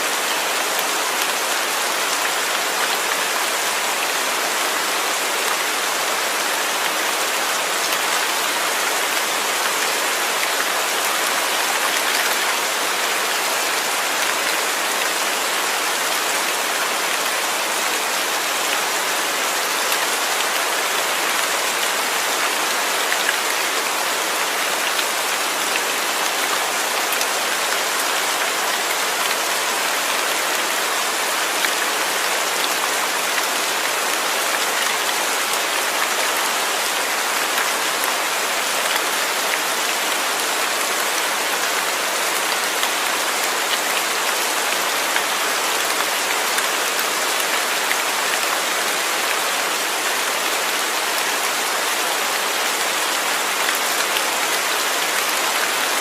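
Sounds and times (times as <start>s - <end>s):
rain falling: 0.0s - 56.0s.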